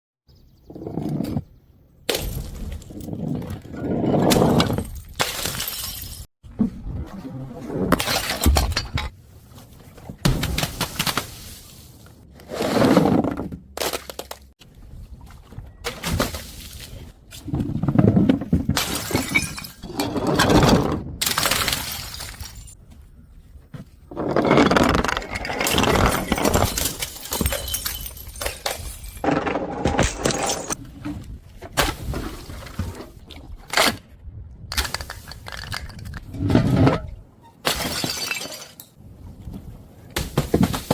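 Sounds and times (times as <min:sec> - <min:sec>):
glass bottles smashing: 0:04.6 - 0:06.3, 0:18.8 - 0:19.9, 0:21.2 - 0:22.8, 0:25.3 - 0:30.8, 0:37.6 - 0:38.9
breaking glass spilling: 0:04.8 - 0:06.3, 0:25.6 - 0:29.3.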